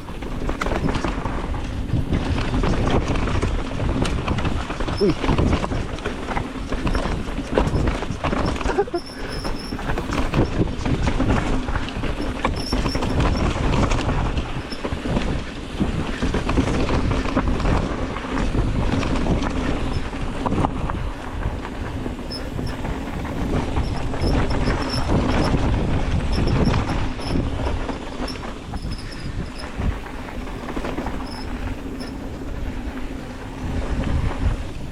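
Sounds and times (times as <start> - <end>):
bike rattling over bumps: 0.0 - 34.9
tyres rumbling over dirt and rocks: 0.0 - 34.9
wind on microphone: 0.0 - 34.9.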